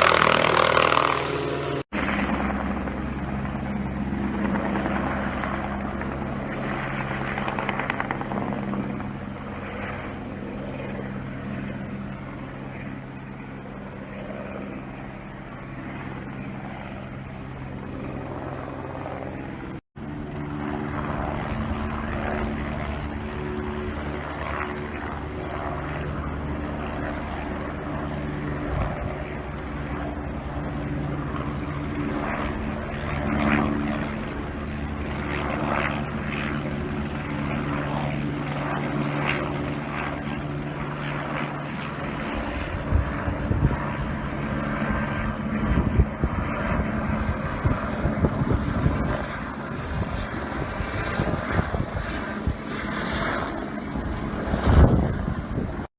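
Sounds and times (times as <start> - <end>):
helicopter droning: 0.0 - 55.9
gusty rumbles: 53.9 - 55.9.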